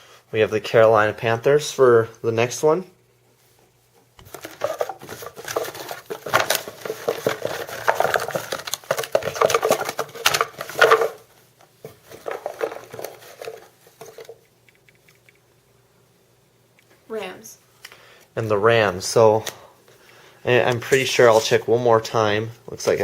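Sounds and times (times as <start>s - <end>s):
cards being shuffled: 4.0s - 15.5s.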